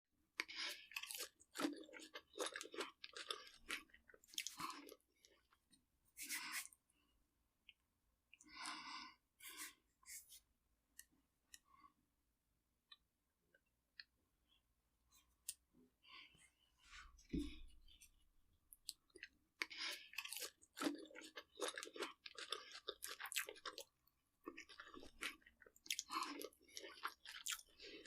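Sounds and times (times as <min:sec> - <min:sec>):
crunchy chewing: 0:00.4 - 0:05.5, 0:18.8 - 0:28.0.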